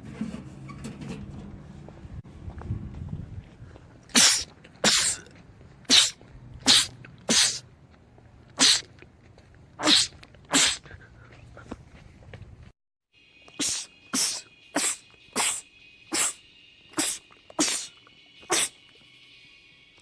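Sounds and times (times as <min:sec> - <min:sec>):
man sneezing: 0:04.1 - 0:05.2, 0:05.9 - 0:07.6, 0:08.6 - 0:08.9, 0:09.8 - 0:10.9, 0:13.6 - 0:16.4, 0:17.0 - 0:17.9, 0:18.5 - 0:18.8.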